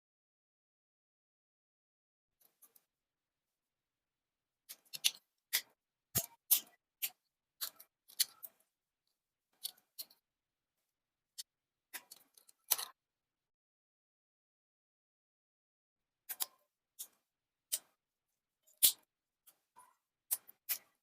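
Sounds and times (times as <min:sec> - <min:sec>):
plastic model parts clicking: 0:04.7 - 0:08.6, 0:09.6 - 0:10.2, 0:11.9 - 0:13.0, 0:16.3 - 0:18.0, 0:20.3 - 0:21.0.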